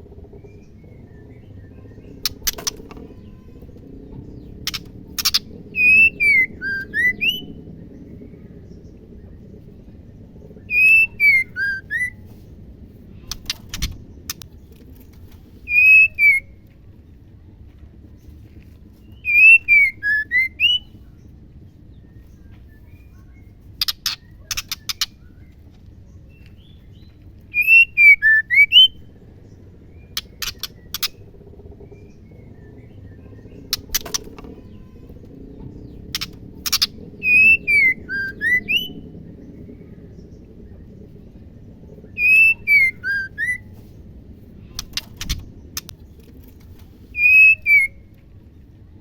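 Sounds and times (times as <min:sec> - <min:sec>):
bird whistling calls: 0:04.7 - 0:07.6, 0:10.6 - 0:12.2, 0:15.7 - 0:16.6, 0:19.2 - 0:20.9, 0:27.5 - 0:29.0, 0:36.2 - 0:39.0, 0:42.1 - 0:43.7, 0:47.1 - 0:48.0
sharp dry clicks: 0:44.8 - 0:46.9.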